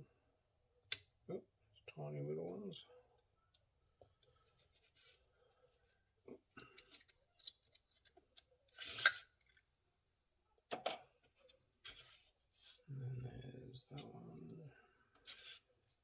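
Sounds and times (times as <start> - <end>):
metal piston ring clicking and scraping: 6.7 - 9.2.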